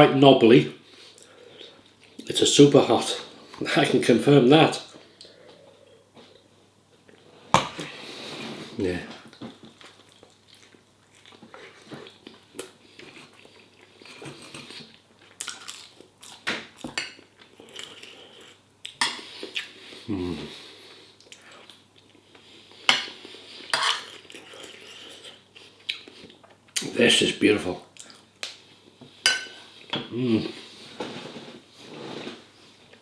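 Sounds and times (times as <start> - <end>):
chewing: 9.3 - 20.0
cutlery clinking on a plate: 29.3 - 30.1.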